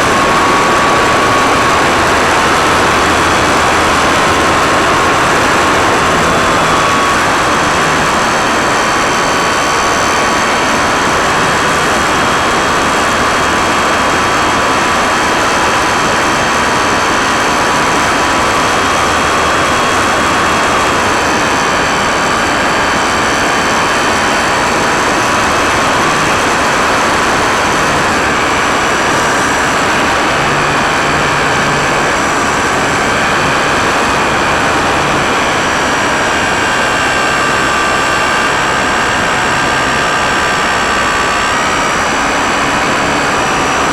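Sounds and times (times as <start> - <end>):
electric motor and propeller whine: 0.0 - 43.9.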